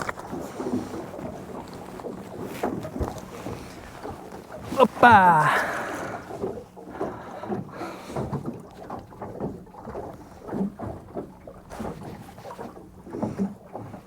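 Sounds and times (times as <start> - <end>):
waves slapping boat hull: 0.0 - 14.0.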